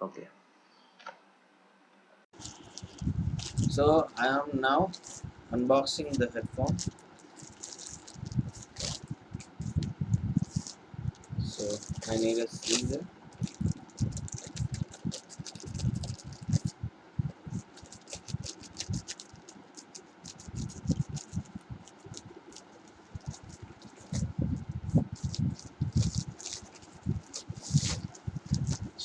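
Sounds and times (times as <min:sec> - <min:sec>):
paper rustling: 0:02.4 - 0:05.3, 0:06.0 - 0:16.7, 0:17.4 - 0:24.3, 0:25.0 - 0:29.0
scissors cutting paper: 0:11.6 - 0:16.7.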